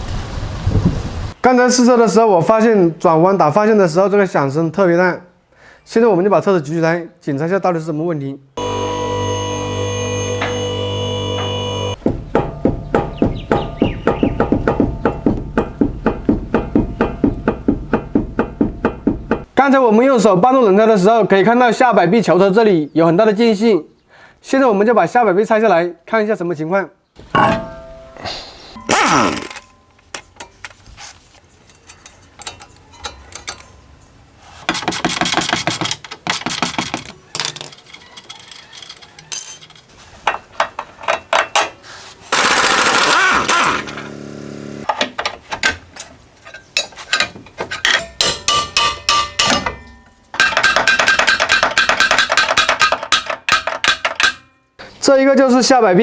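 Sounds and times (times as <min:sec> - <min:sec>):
clanks of tools and metal parts: 0:27.2 - 0:28.2, 0:28.8 - 0:33.9, 0:35.7 - 0:41.8, 0:42.9 - 0:44.2, 0:44.8 - 0:54.8
pneumatic impact wrench rattling: 0:28.9 - 0:29.7, 0:42.3 - 0:45.0.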